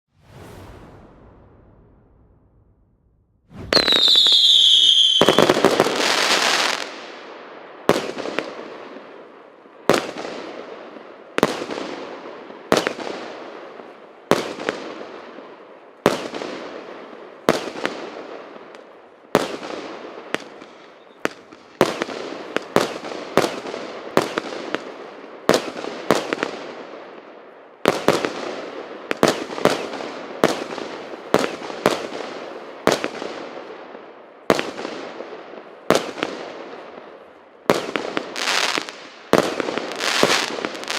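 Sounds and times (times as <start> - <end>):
firework shots firing: 3.5 - 6.8.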